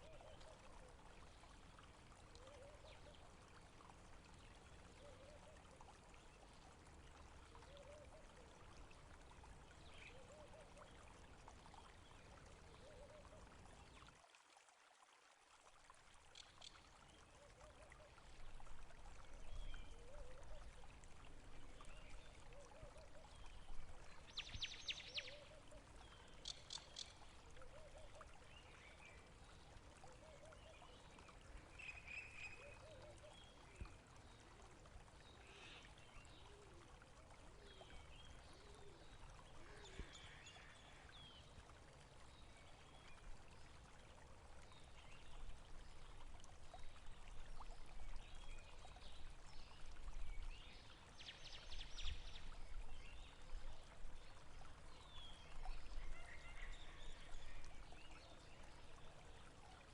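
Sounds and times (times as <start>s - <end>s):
stream water flowing: 0.0s - 59.9s.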